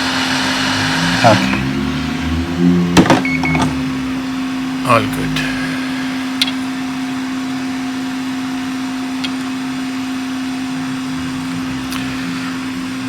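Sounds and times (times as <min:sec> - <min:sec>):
hot air station hissing: 0:05.0 - 0:07.7.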